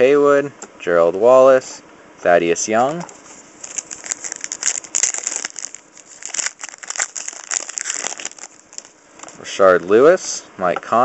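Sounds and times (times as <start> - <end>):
cards being shuffled: 3.1 - 10.0
card pack wrapper crinkling: 3.4 - 9.4.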